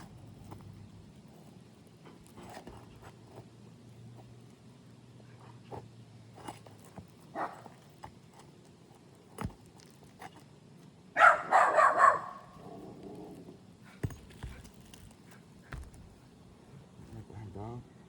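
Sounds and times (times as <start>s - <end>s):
taps on asphalt shingles: 6.5s - 10.9s, 14.0s - 16.6s
dog barking: 7.3s - 7.6s, 11.2s - 12.6s.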